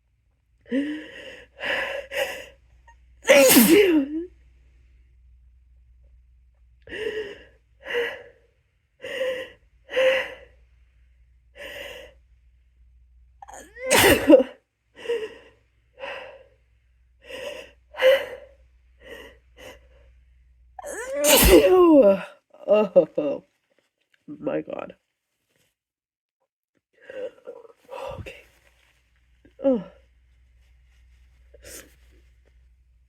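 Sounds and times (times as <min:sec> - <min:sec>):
woman gasping breaths: 0:00.7 - 0:02.6, 0:06.9 - 0:08.4, 0:17.2 - 0:20.0
woman sneezing: 0:03.3 - 0:04.3, 0:13.5 - 0:14.6, 0:20.8 - 0:22.2.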